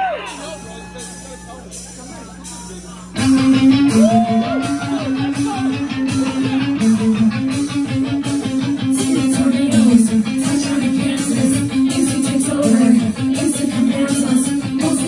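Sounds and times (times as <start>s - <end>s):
steady drum beat: 0.0s - 15.0s
electric guitar riff: 3.1s - 15.0s
live rock band: 3.1s - 15.0s.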